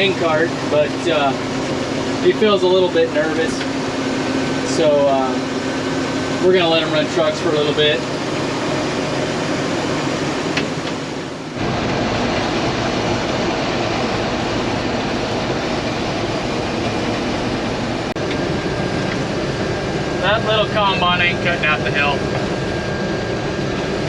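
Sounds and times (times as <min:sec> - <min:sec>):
combine harvester running: 0:00.0 - 0:24.0
deep heavy rumble: 0:00.0 - 0:24.0.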